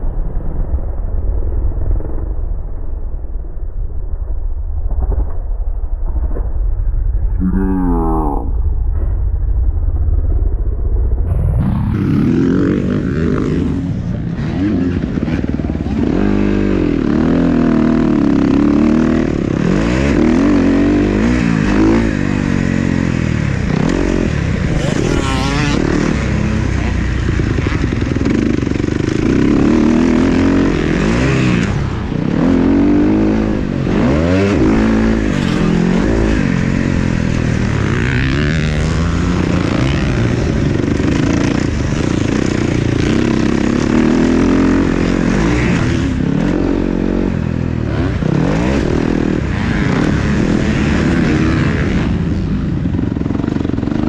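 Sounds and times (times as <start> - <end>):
dirt bike engines revving: 11.3 - 54.0.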